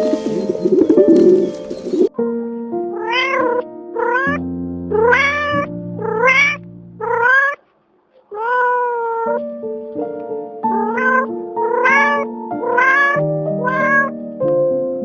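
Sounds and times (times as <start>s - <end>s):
background music with held notes: 0.0s - 7.2s, 9.3s - 15.0s
cat meowing: 2.9s - 7.6s, 8.2s - 9.4s, 10.7s - 14.2s.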